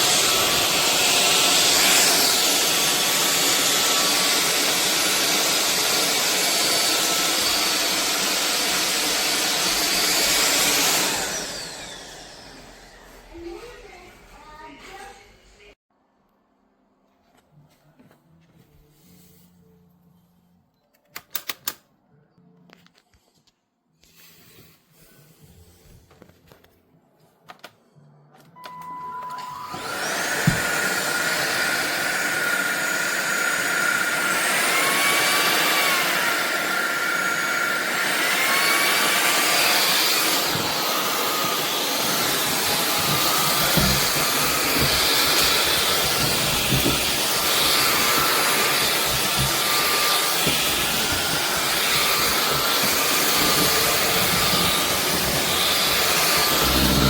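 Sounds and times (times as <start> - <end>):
vacuum motor whining: 0.0 - 14.0, 28.6 - 57.0.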